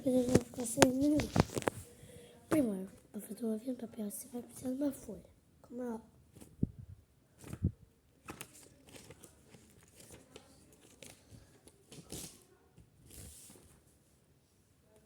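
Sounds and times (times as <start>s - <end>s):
paper rustling and crinkling: 0.0s - 2.0s, 7.4s - 14.0s.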